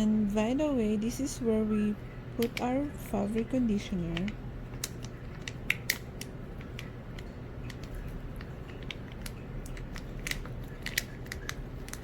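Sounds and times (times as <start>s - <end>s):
washing machine humming: 0.0s - 12.0s.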